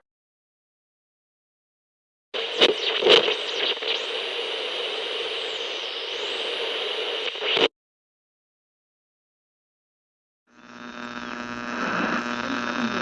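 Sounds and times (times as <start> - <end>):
radio static with sweeping whistles: 2.4 - 7.7, 10.6 - 13.0.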